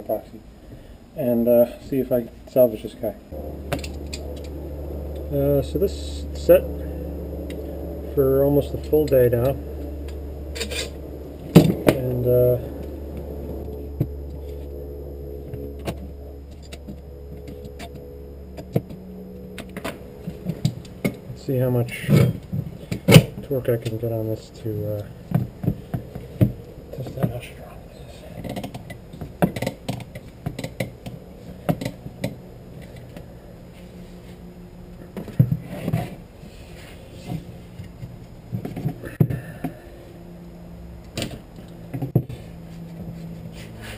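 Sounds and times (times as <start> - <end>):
steady low hum: 0.0 - 43.9.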